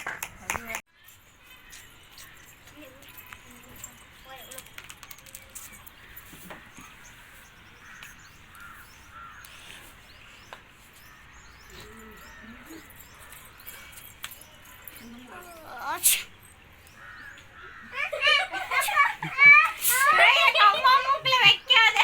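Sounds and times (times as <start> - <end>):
faint background noise: 0.0 - 22.0
crows cawing: 7.8 - 9.5, 16.9 - 18.2.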